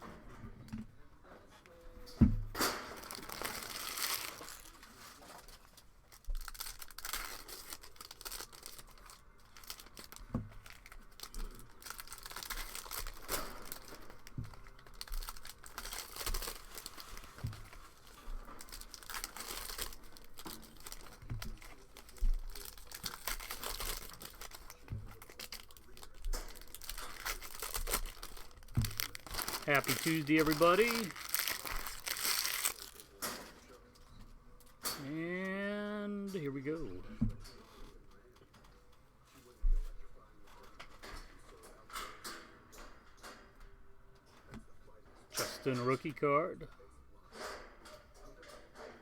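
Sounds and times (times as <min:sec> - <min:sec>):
plastic wrappers crinkling and tearing: 0:02.6 - 0:33.8.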